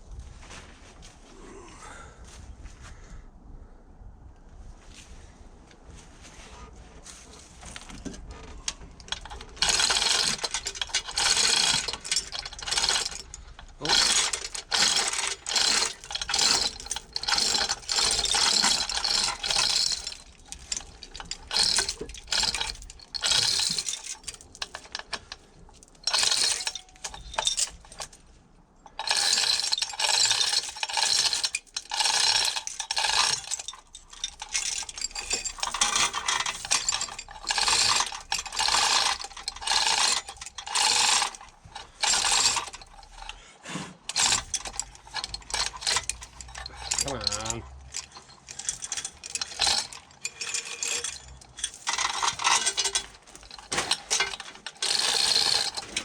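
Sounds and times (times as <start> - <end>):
hand ratchet clicking: 9.1 - 25.2, 44.1 - 56.0.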